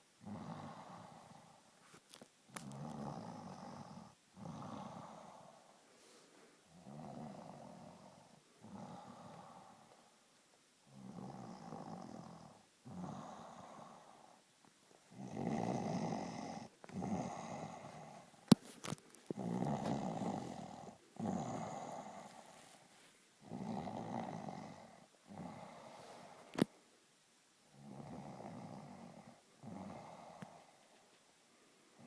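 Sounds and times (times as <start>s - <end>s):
person snoring: 0.2s - 1.6s, 2.6s - 5.7s, 6.8s - 10.0s, 10.9s - 14.4s, 15.1s - 18.4s, 19.3s - 22.6s, 23.4s - 26.4s, 27.7s - 30.6s.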